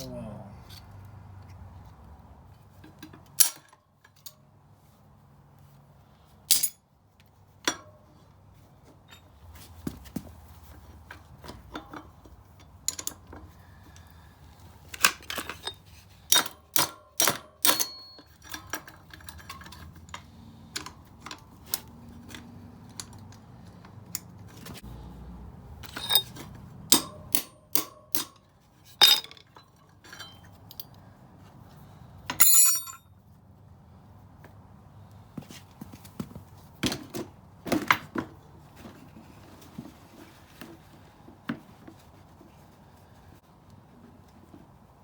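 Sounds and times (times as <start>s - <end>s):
metal tools clinking on metal: 6.5s - 6.8s, 11.1s - 13.6s, 14.9s - 23.4s, 25.8s - 31.0s, 32.3s - 33.1s.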